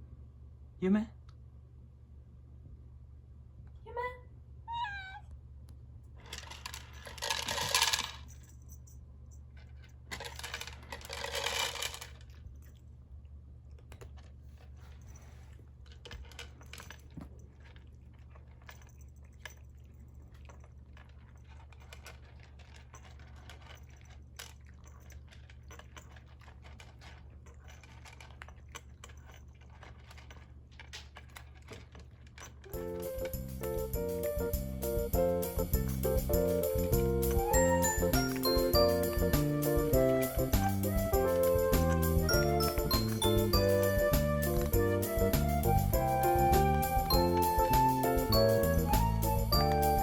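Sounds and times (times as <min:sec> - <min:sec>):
pet feeder dispensing kibble: 0:06.2 - 0:08.4, 0:09.7 - 0:12.8, 0:13.8 - 0:50.0
cat crunching kibble: 0:09.4 - 0:33.9.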